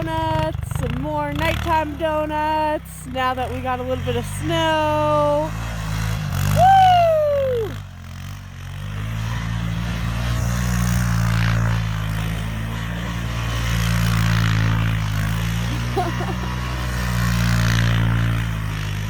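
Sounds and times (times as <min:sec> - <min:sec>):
quad engine under throttle: 0:00.0 - 0:19.0.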